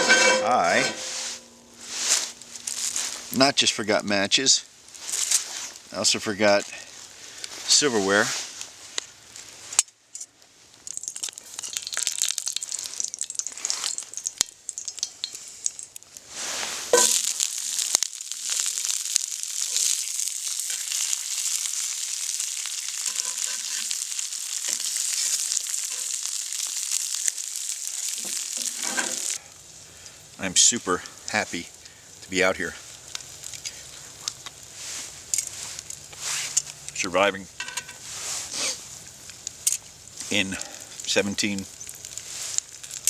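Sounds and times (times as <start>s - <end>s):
food frying in a pan: 10.5s - 43.0s.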